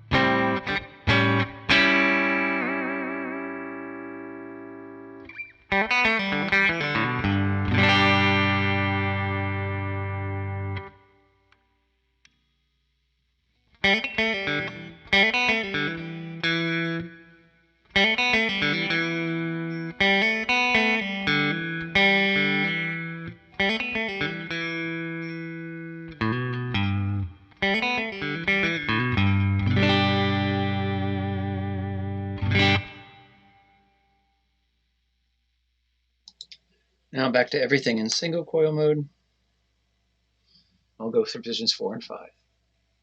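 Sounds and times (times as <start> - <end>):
electric guitar strummed chords: 0.0 - 11.0, 13.8 - 33.7.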